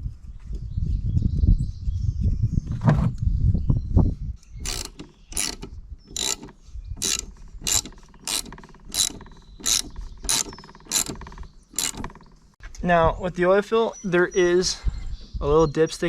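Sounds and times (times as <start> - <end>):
ratchet wrench clicking: 4.6 - 12.5
low rumbling handling noise: 4.6 - 13.2.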